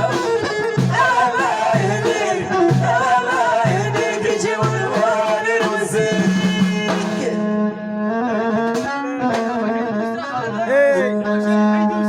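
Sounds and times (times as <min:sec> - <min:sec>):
hand percussion: 0:00.0 - 0:07.3
bending string instrument melody: 0:00.0 - 0:12.0.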